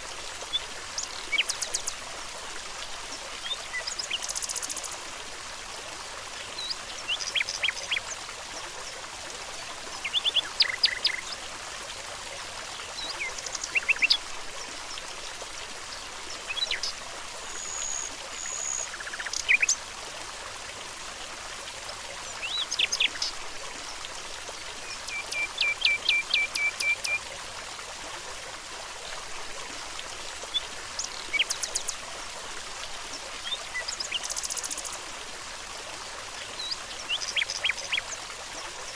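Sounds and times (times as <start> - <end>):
running water: 0.0 - 38.9
small birds chirping and trilling: 30.5 - 32.0.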